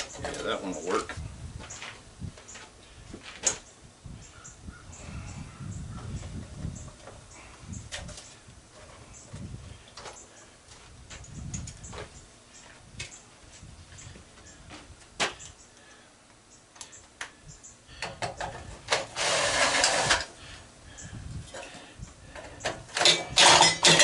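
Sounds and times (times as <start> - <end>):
scraping rattle: 18.4 - 20.3, 22.3 - 24.0
loud metal clanking: 22.9 - 24.0.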